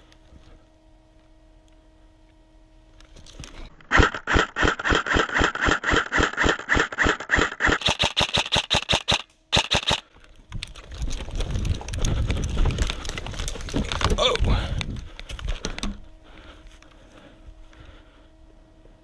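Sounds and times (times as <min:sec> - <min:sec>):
airsoft gun firing shots: 0:03.9 - 0:10.0
rustling and handling noise: 0:10.1 - 0:18.4.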